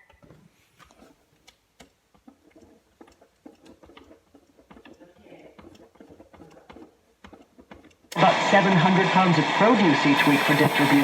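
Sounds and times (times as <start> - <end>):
faint radio speaker noise: 8.2 - 11.0.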